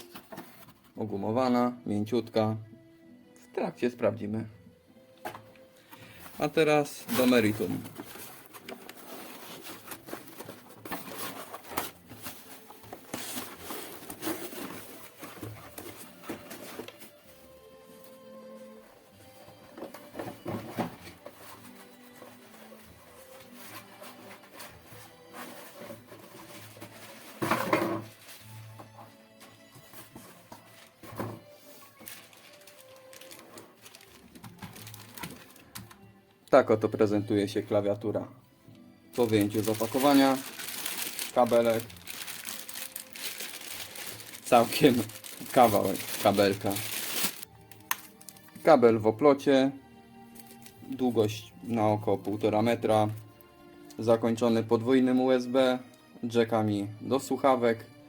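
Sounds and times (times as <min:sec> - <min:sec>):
quiet background music: 0:00.0 - 0:58.0
packaging rustling and crinkling: 0:06.0 - 0:17.2, 0:19.4 - 0:28.9, 0:29.5 - 0:36.0, 0:39.2 - 0:48.7, 0:50.4 - 0:51.0.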